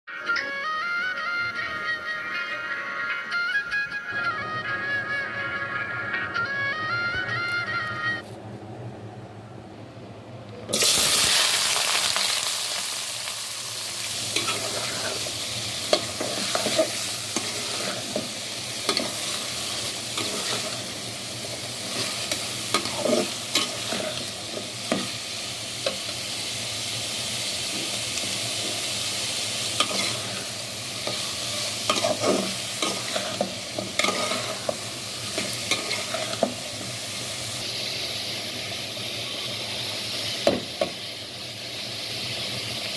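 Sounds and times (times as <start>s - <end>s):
food sizzling in hot oil: 10.7s - 42.9s
spatula scraping a pan: 14.3s - 21.0s, 21.9s - 25.1s, 29.8s - 36.6s.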